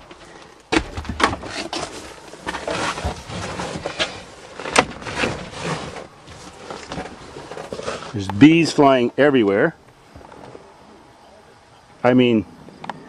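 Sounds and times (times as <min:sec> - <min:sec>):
sharp knocks and clunks: 0:00.7 - 0:01.8.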